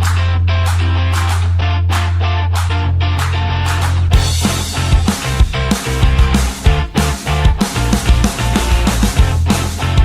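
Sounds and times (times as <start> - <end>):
instrumental rock music: 0.0 - 10.0
low drum thumps: 4.1 - 10.0.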